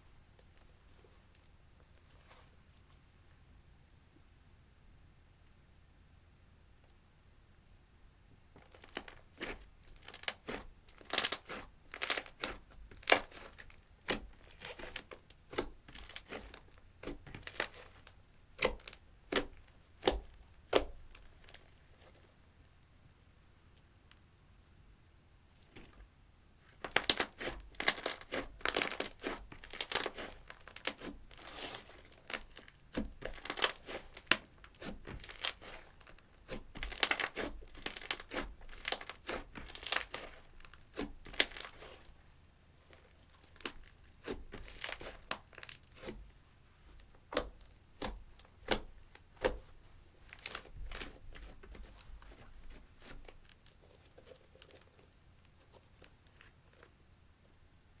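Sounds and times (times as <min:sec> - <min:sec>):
slime crackling and popping: 0:08.6 - 0:21.7, 0:26.8 - 0:42.1, 0:42.9 - 0:46.1, 0:47.3 - 0:52.0.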